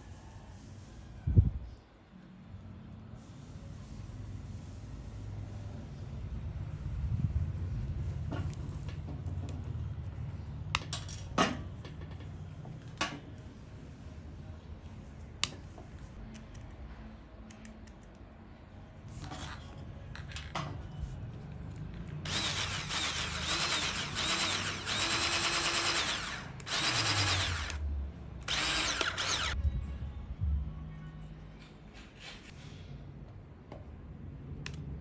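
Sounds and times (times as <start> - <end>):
small electric motor whine: 22.3 - 27.8, 28.5 - 29.6.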